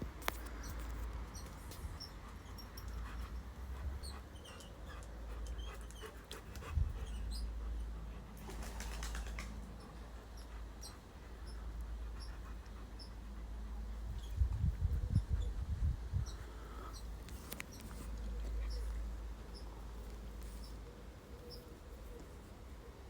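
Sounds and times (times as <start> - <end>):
wind buffeting microphone: 6.5 - 7.1, 14.0 - 17.4.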